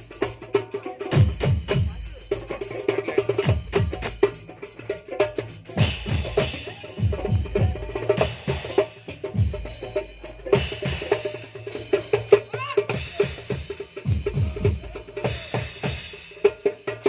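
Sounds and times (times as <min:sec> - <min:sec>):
fast low drum strokes: 0:00.0 - 0:17.0.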